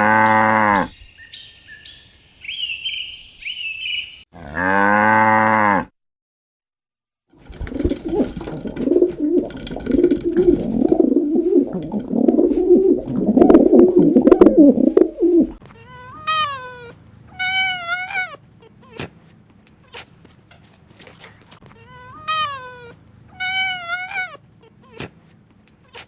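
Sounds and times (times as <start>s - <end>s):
pigeons cooing: 0.0s - 4.2s, 7.5s - 15.6s
cat meowing: 15.8s - 19.0s, 21.7s - 25.0s.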